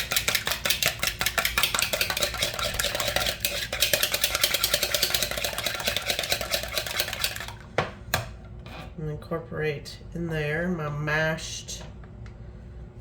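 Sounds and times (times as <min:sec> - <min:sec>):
eggs whisked in a bowl: 0:00.0 - 0:07.7.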